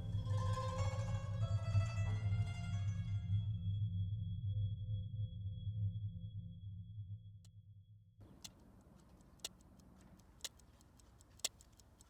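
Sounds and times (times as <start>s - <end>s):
low droning ambient music: 0.0s - 7.7s
clock ticking: 8.3s - 12.0s.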